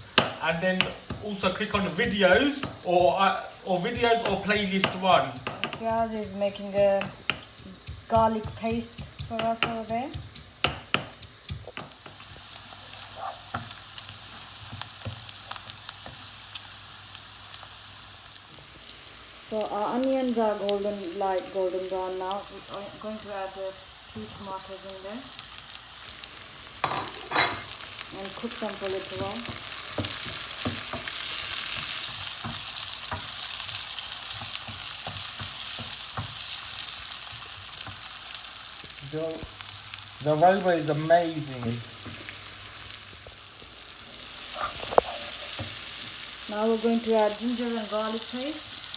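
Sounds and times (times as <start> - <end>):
spoon knocking and scraping pan: 0.0 - 16.4, 26.8 - 39.6, 41.5 - 48.4
onions sizzling in oil: 0.0 - 48.9
spoon knocking against pan: 3.8 - 12.2.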